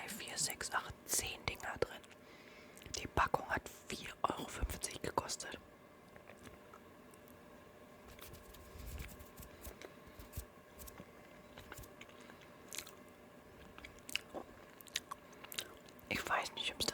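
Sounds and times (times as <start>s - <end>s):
dough balls being chewed: 8.1s - 16.1s
mouth clicks and wet smacks: 13.6s - 16.0s.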